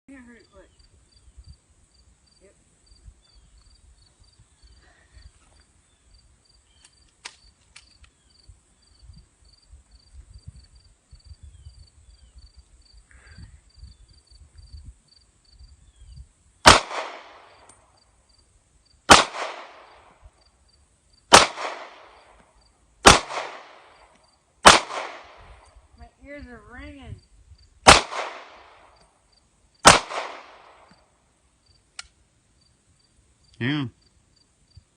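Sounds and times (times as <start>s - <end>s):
insects chirping: 0.1s - 34.9s
pistol shots with echo: 16.6s - 17.6s, 19.1s - 20.1s, 21.3s - 22.2s, 23.0s - 23.9s, 24.6s - 25.4s, 27.8s - 28.8s, 29.8s - 30.9s.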